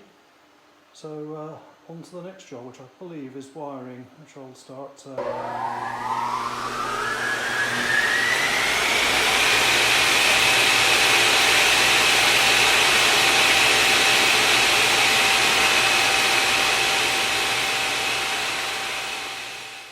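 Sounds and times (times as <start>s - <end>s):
electric motor whine: 5.2s - 19.9s.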